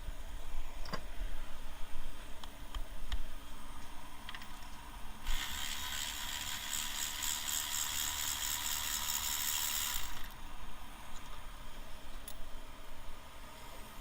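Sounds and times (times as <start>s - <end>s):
ratchet wrench clicking rapidly: 5.2s - 10.4s.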